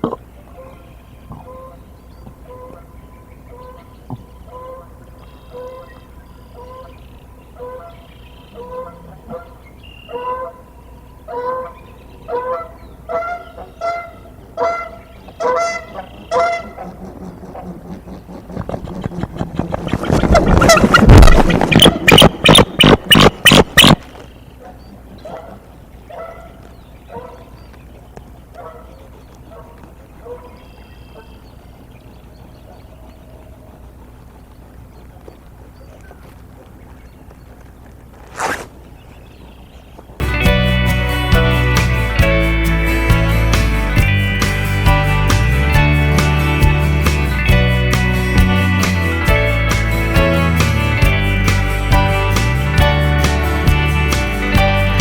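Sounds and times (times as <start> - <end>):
geese honking: 0.0 - 18.7, 19.3 - 27.5, 28.6 - 31.5
animal harsh calls: 3.5 - 24.0.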